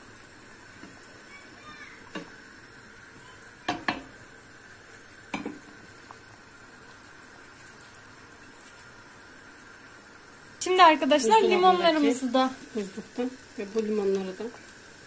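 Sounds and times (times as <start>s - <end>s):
pot boiling with low hiss: 0.0s - 15.0s
pot and utensil knocks: 3.7s - 4.1s.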